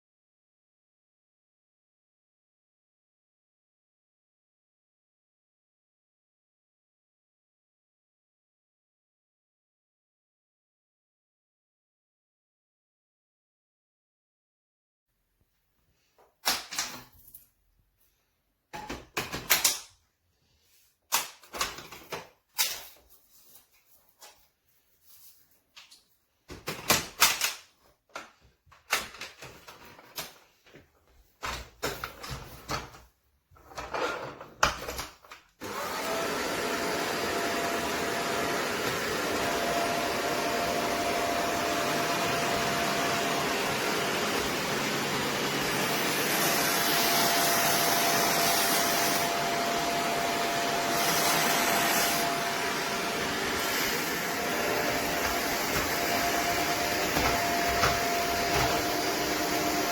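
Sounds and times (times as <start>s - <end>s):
vacuum cleaner running: 35.6s - 59.9s.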